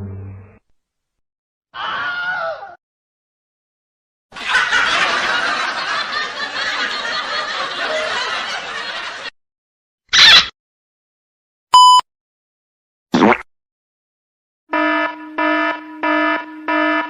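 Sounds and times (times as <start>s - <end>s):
crowd laughing: 4.3s - 9.4s.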